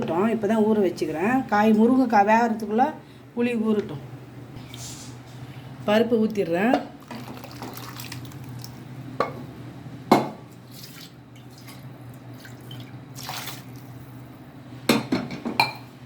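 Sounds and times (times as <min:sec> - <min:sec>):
liquid food plopping and dripping: 0:07.0 - 0:08.8.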